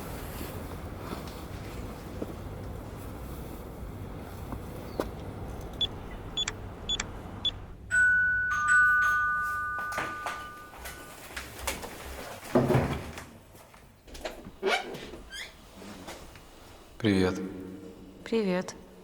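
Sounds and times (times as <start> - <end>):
two-tone doorbell chime: 7.9 - 11.4.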